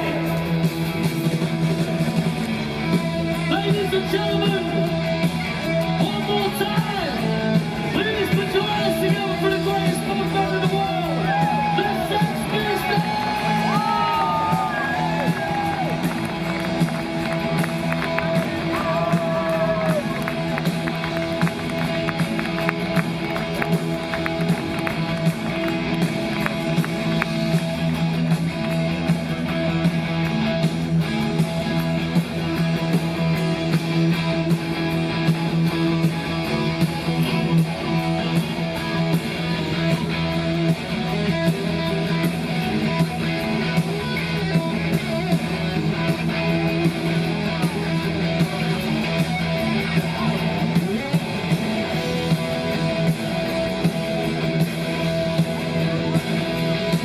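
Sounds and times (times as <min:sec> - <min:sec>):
live punk rock band: 0:00.0 - 0:57.0.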